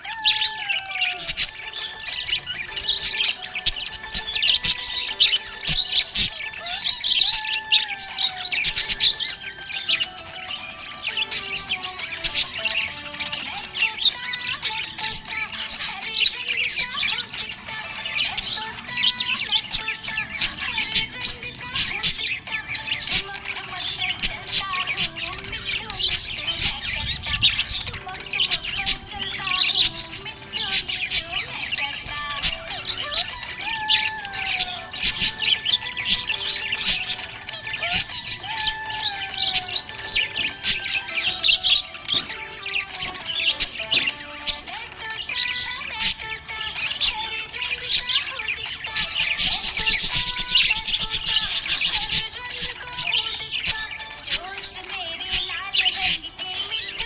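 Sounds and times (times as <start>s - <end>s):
parrot squawks: 0.0s - 57.0s
parrots chirping: 0.0s - 57.0s.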